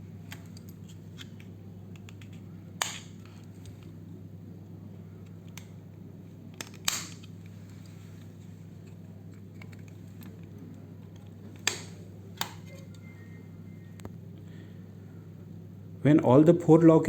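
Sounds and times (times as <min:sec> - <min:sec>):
steady low hum: 0:00.0 - 0:17.0
plastic clips snapping: 0:01.2 - 0:03.4, 0:06.5 - 0:07.4, 0:09.6 - 0:12.9.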